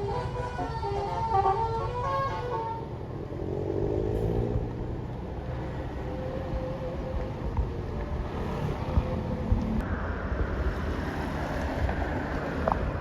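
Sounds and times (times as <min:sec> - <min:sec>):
multi-tone bus horn tune: 0:00.0 - 0:03.2
bus engine running: 0:00.0 - 0:13.0.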